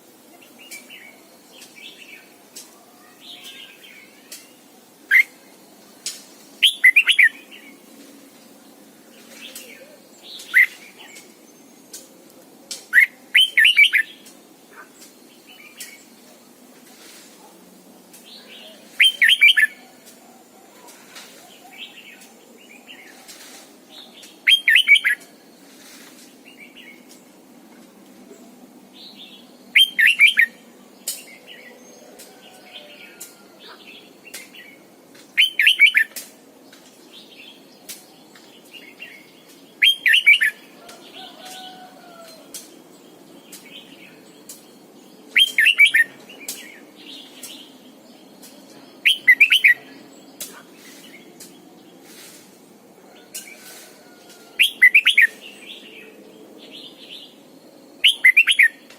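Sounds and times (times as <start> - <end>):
bird singing song phrases: 0.3 - 5.6, 6.6 - 7.8, 9.2 - 12.1, 12.8 - 16.2, 18.2 - 20.1, 23.9 - 25.3, 28.3 - 36.2, 37.1 - 52.3, 53.1 - 58.9
faint bird chirps: 58.0 - 58.8.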